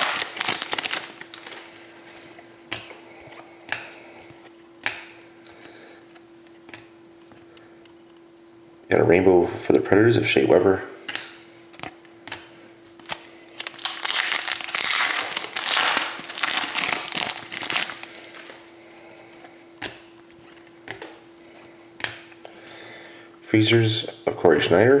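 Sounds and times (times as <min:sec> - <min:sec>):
plastic packaging crinkling: 0:00.0 - 0:02.3, 0:12.9 - 0:18.6
faint steady hum: 0:00.0 - 0:25.0.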